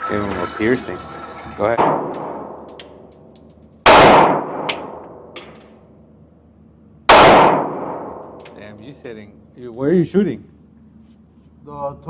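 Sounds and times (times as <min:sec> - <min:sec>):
handgun shots with echo: 0:03.8 - 0:05.6, 0:07.1 - 0:08.6.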